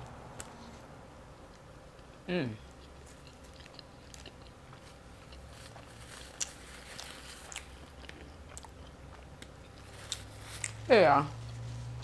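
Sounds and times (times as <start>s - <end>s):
person chewing food: 1.4s - 11.6s.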